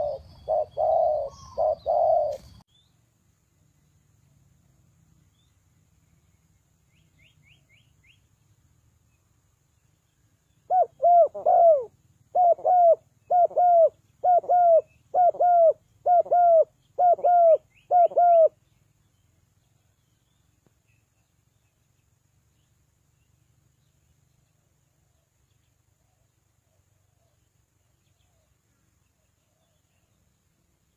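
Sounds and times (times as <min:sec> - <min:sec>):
dove cooing: 0:00.0 - 0:02.6, 0:10.7 - 0:18.6
small bird chirping: 0:00.0 - 0:30.9.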